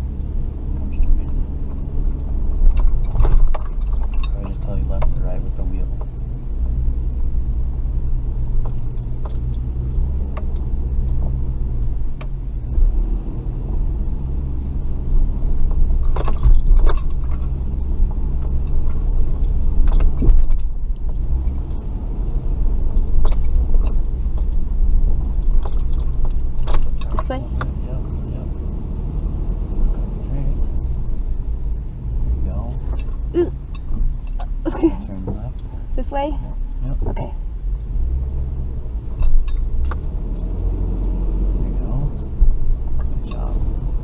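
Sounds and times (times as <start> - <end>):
truck engine running low: 0.0 - 44.0
body knocks and rattles: 0.8 - 12.8, 14.5 - 28.5, 29.1 - 37.4, 39.0 - 41.1.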